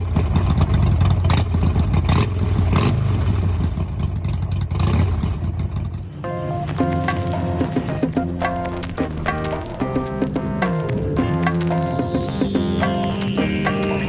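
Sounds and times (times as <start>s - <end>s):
car engine rumbling: 5.3s - 14.0s
music: 6.3s - 14.0s.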